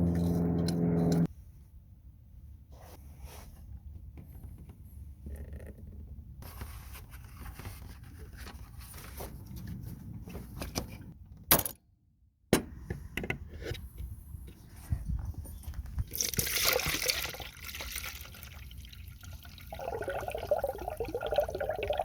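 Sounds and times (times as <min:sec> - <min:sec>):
low rumble: 0:00.0 - 0:01.3.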